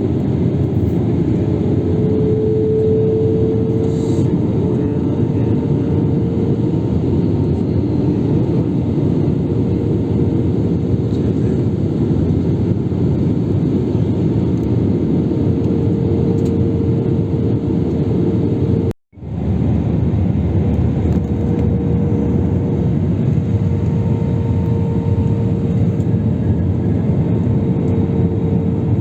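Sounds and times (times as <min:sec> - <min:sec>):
airliner engine drone: 0:00.0 - 0:29.0
rushing air rumble: 0:00.0 - 0:29.0
steady hum tone: 0:18.0 - 0:29.0.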